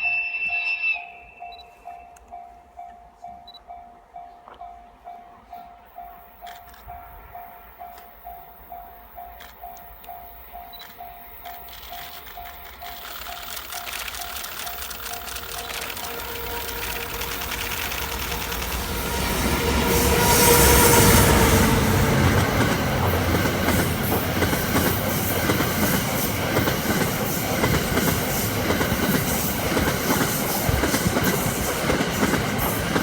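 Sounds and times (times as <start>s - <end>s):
electric locomotive passing: 0.0s - 33.0s
train wheels clacking over rail joints: 9.2s - 33.0s.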